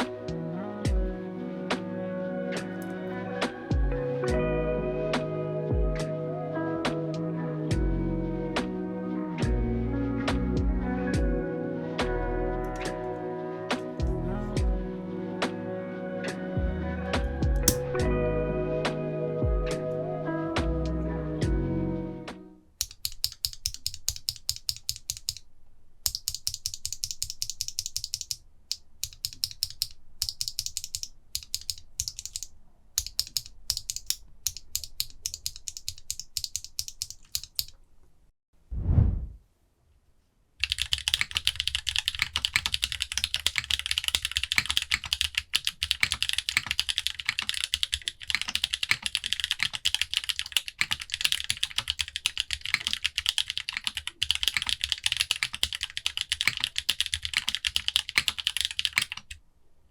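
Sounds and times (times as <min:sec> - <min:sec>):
mechanical keyboard switch clicks: 0:17.6 - 0:17.8, 0:22.8 - 0:25.4
fast typing on mechanical keyboard: 0:22.8 - 0:25.4, 0:26.1 - 0:37.7, 0:40.6 - 0:59.4
short low thump: 0:38.7 - 0:39.4.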